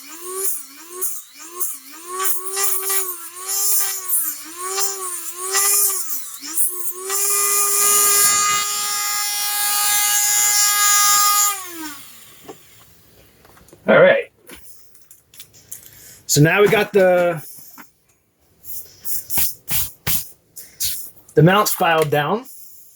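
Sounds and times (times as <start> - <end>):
rotary tool grinding plastic: 0.0 - 12.9.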